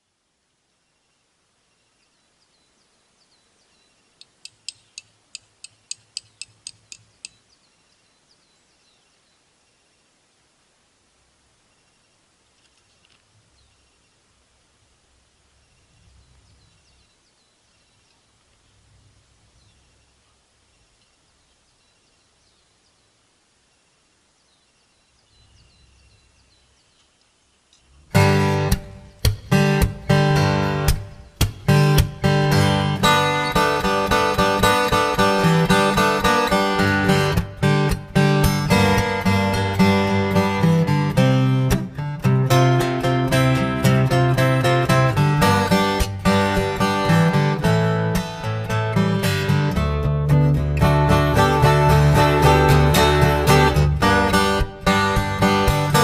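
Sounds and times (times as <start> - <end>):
faint outdoor ambience: 0.0 - 56.0
birds chirping: 0.6 - 10.4, 11.5 - 38.0, 50.4 - 56.0
sharp high clicking notes: 4.2 - 7.4, 50.6 - 56.0
strummed acoustic guitar: 28.1 - 56.0.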